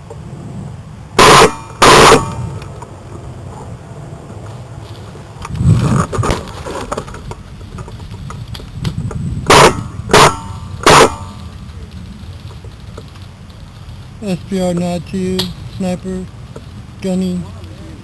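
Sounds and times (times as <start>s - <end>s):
rumbling handling noise: 0.0s - 18.0s
airsoft rifle shots: 1.2s - 2.6s, 9.5s - 11.4s.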